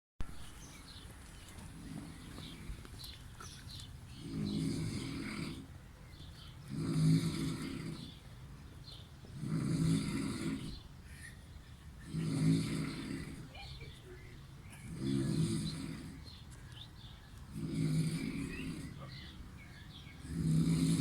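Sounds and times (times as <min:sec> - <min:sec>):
person snoring: 0:12.0 - 0:13.5, 0:14.8 - 0:16.2, 0:17.6 - 0:19.1, 0:20.2 - 0:21.0.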